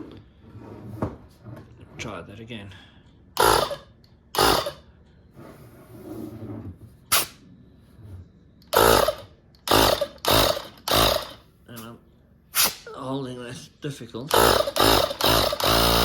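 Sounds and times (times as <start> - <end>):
compressed air bursts: 7.1 - 7.4, 12.6 - 12.9.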